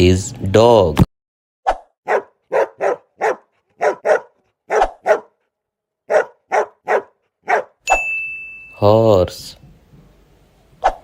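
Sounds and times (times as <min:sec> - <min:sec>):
dog barking: 0:02.0 - 0:07.8.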